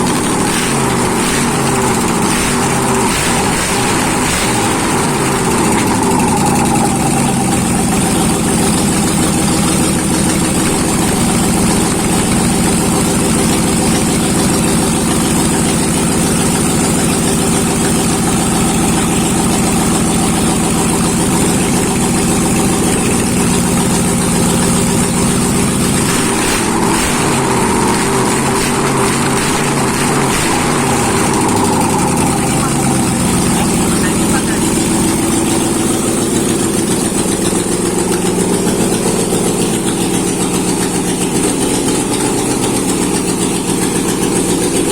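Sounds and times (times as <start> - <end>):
truck engine running: 0.0 - 44.9.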